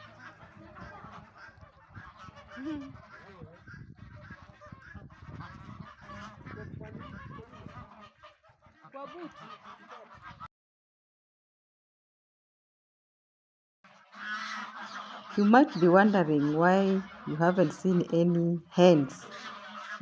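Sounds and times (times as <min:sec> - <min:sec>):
geese honking: 0:00.0 - 0:06.5, 0:07.6 - 0:10.5, 0:13.9 - 0:20.0.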